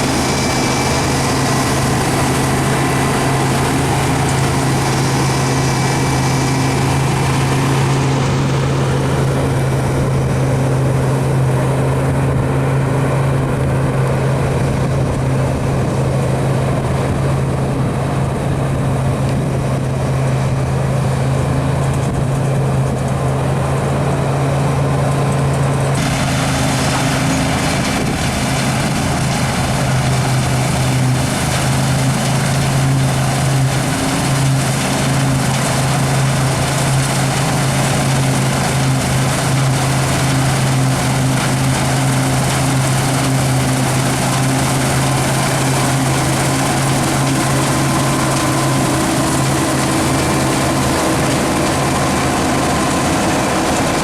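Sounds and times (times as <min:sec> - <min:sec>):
diesel engine humming: 0:00.0 - 0:54.0
hissing rattling sound: 0:25.4 - 0:54.0.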